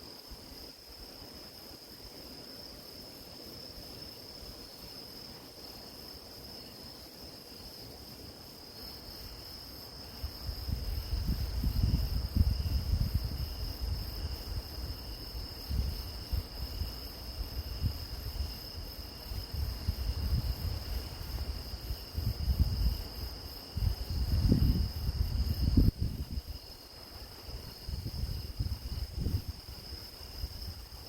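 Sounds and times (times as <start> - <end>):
crickets trilling: 0.0 - 31.0
low rumble in gusts: 10.2 - 31.0.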